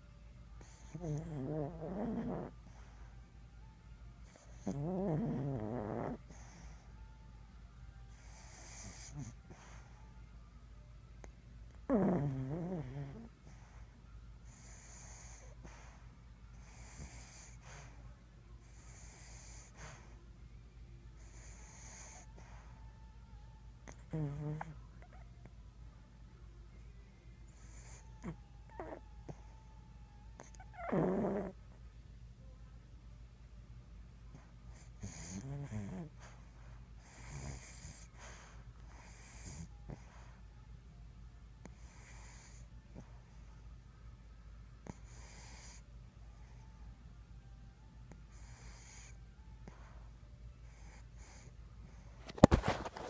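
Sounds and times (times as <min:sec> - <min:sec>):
person snoring: 0:11.9 - 0:13.3.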